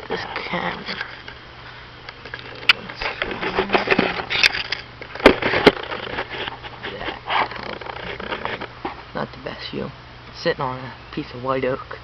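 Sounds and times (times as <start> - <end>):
camera handling rustling and scraping: 0.7 - 1.4, 2.1 - 9.1.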